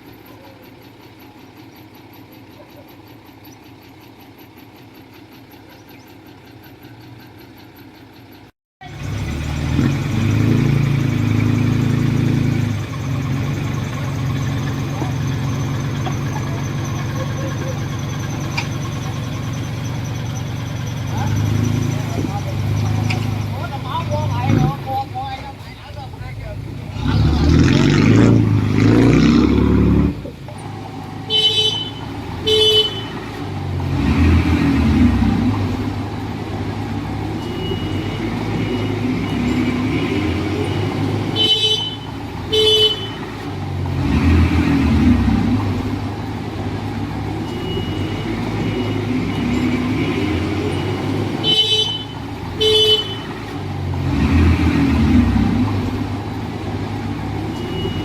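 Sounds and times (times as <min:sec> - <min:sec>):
diesel machinery revving: 0:00.0 - 0:58.0
short horn toots: 0:31.2 - 0:33.4, 0:37.4 - 0:43.5, 0:50.5 - 0:53.4
faint beeping: 0:57.4 - 0:58.0.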